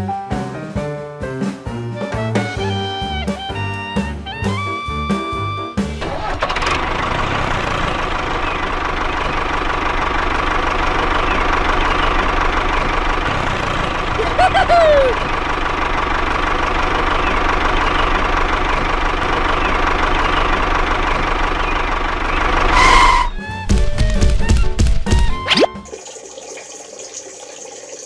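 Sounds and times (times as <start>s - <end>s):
small engine running: 6.0s - 24.8s.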